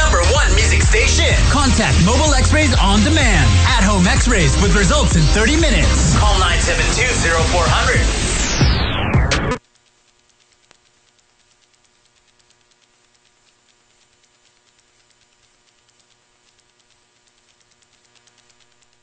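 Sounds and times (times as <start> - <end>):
static crackle ticking: 0.0 - 19.0
faint mains hum: 9.6 - 19.0.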